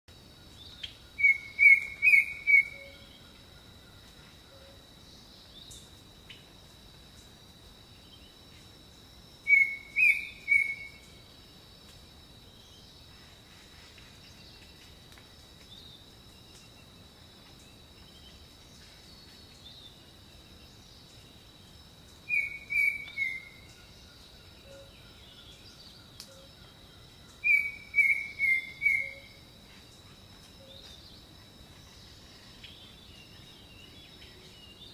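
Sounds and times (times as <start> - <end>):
faint steady high tone: 0.5 - 4.9, 22.4 - 26.6
bird chirping: 0.5 - 6.4, 9.5 - 11.1, 22.1 - 34.9.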